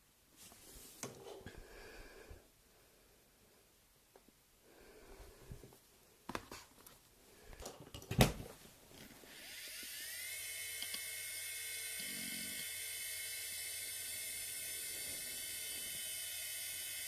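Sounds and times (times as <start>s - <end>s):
hard drive spindle whine: 9.3s - 17.0s.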